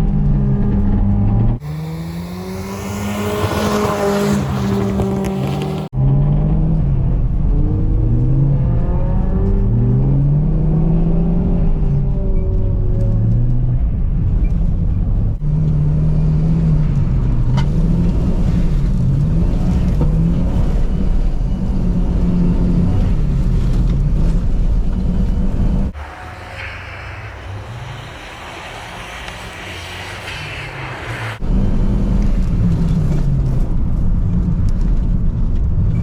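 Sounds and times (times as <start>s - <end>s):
car engine revving: 0.0s - 12.1s, 24.9s - 32.0s.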